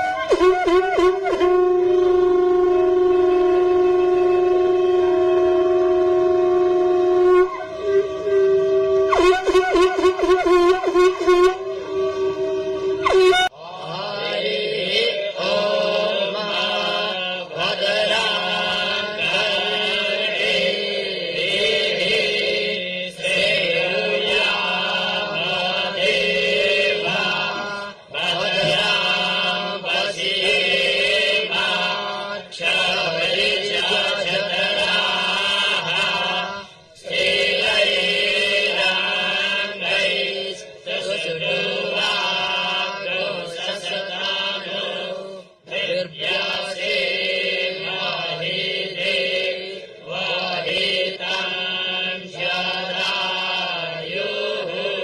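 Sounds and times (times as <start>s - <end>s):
conch shells blown: 0.0s - 13.6s.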